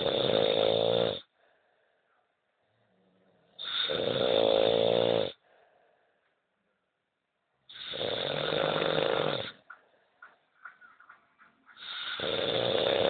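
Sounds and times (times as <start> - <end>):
man snoring: 0.0 - 1.3, 3.6 - 5.4, 7.7 - 9.6, 11.8 - 13.0.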